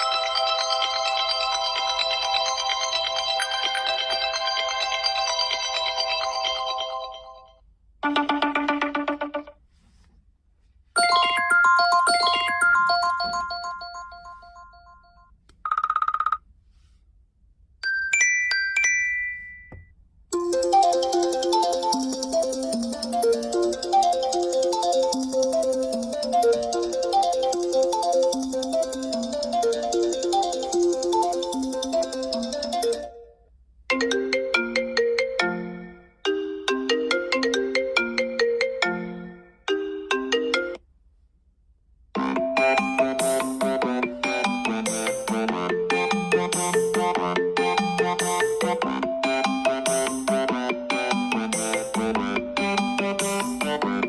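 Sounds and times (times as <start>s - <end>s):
bright bell-like ringtone: 0.0s - 8.6s, 11.0s - 16.3s, 17.8s - 22.3s, 44.4s - 48.8s
chime ringtone melody: 0.0s - 9.4s, 11.0s - 15.8s, 17.8s - 23.5s, 42.6s - 52.0s
dense phone ringtone: 11.0s - 16.4s.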